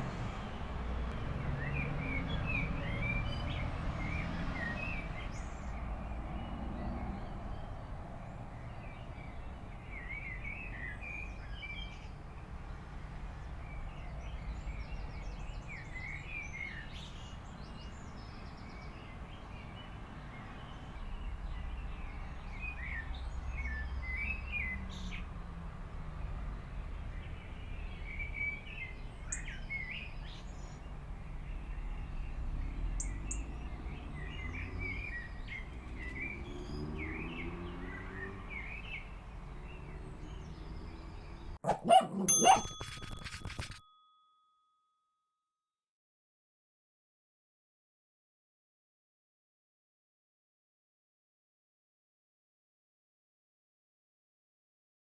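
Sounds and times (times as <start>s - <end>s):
small birds chirping: 27.0s - 43.2s.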